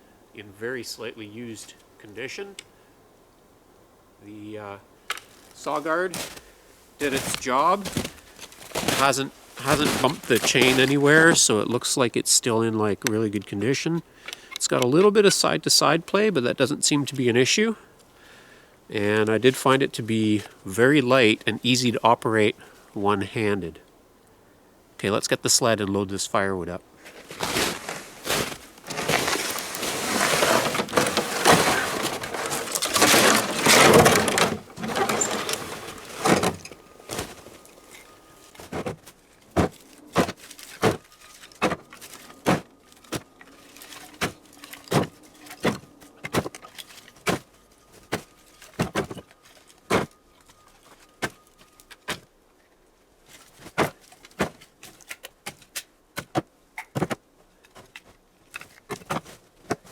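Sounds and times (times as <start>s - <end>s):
rushing scraping noise: 27.3s - 37.6s.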